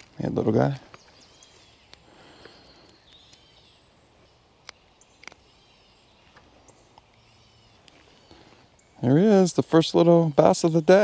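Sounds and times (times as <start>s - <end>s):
faint bird chirps: 0.6s - 9.4s
sharp clicks: 4.6s - 5.5s.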